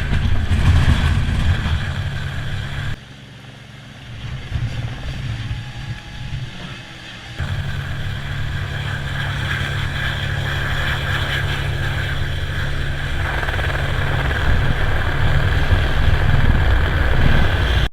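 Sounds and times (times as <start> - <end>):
helicopter rotor beating: 0.0 - 17.9
high steady whine: 0.0 - 17.9
wind on microphone: 7.4 - 17.9.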